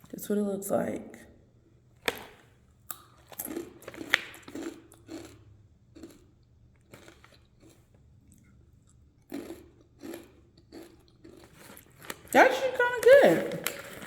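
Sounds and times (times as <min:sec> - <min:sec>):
person chewing crunchy snack: 0:02.9 - 0:12.3.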